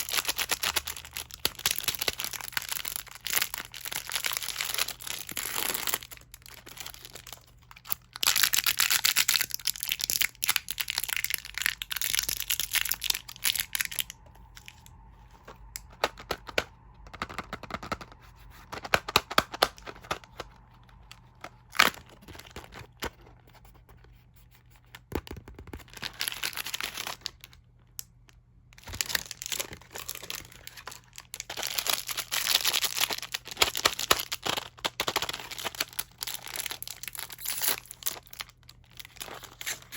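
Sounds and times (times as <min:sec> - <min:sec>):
plastic wrappers crinkling: 0:00.0 - 0:15.0, 0:19.4 - 0:23.0, 0:25.6 - 0:27.6, 0:28.8 - 0:39.9.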